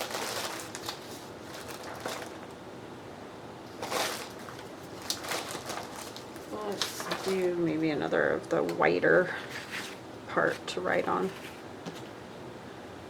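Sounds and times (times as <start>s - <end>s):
paper rustling swishes: 3.8s - 7.6s, 9.3s - 12.1s.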